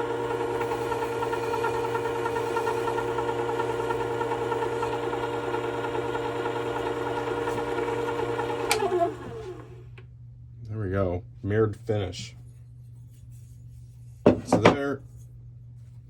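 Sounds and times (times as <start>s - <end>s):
sharpener motor humming: 0.0s - 9.8s.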